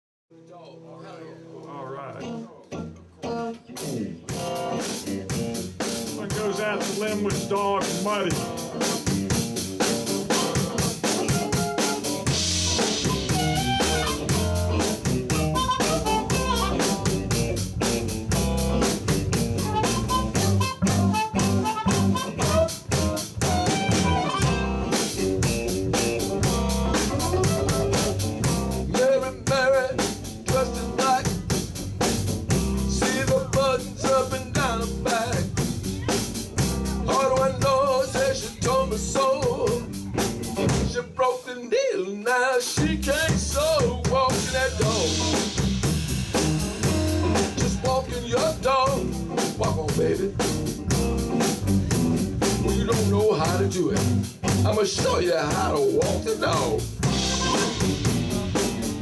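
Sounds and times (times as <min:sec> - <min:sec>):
blues band playing: 0:02.2 - 0:41.0, 0:42.5 - 0:59.0
harmonica: 0:11.3 - 0:14.7, 0:15.3 - 0:17.2, 0:19.6 - 0:22.8, 0:23.4 - 0:24.8, 0:26.8 - 0:28.2, 0:57.1 - 0:58.2.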